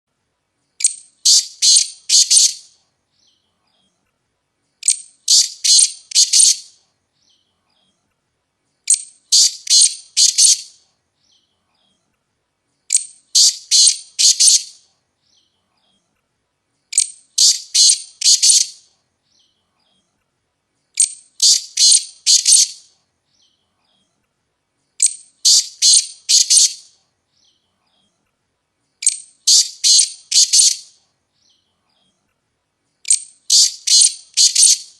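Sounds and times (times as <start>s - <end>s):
partridge calling: 0.8s - 2.7s, 4.8s - 6.7s, 8.9s - 10.8s, 12.9s - 14.8s, 16.9s - 18.8s, 21.0s - 22.8s, 25.0s - 26.9s, 29.0s - 31.0s, 33.0s - 34.9s.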